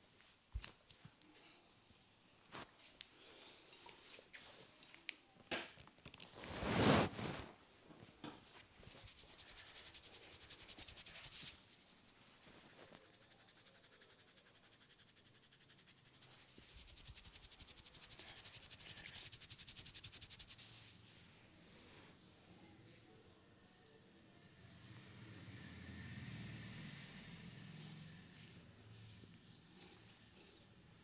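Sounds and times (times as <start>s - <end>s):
hands rubbing scalp and hair: 6.4s - 7.6s, 8.5s - 21.2s, 26.9s - 30.5s.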